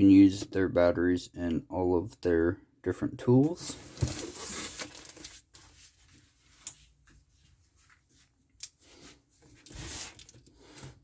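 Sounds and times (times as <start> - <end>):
cardboard box being handled: 3.6 - 5.0
cardboard rustle: 3.6 - 6.5, 9.5 - 11.0.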